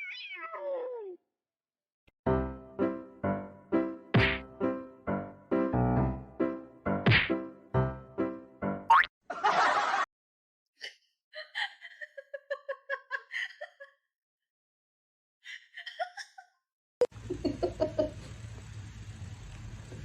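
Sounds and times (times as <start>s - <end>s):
giggling laughter: 9.3s - 10.1s, 10.8s - 14.0s, 15.5s - 16.5s, 17.2s - 18.2s.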